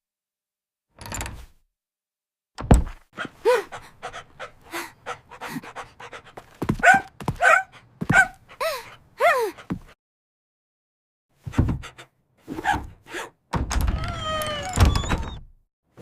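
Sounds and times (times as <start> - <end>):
dog panting: 3.2 - 9.9
dog whining: 13.9 - 15.4.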